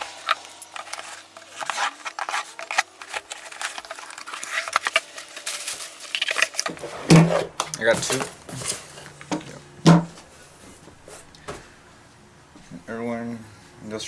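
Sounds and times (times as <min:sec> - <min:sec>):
clicks taps and rustles of packaging: 0:00.3 - 0:11.7.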